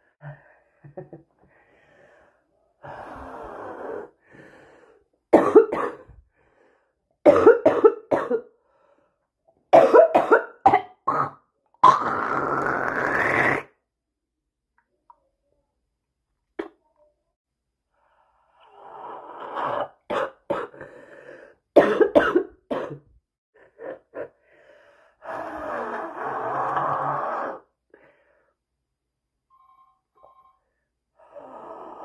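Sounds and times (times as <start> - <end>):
person inhaling: 1.4 - 5.1, 20.8 - 21.7, 24.4 - 26.0
person coughing: 5.4 - 6.2, 7.3 - 8.5, 9.7 - 12.1, 21.8 - 23.1.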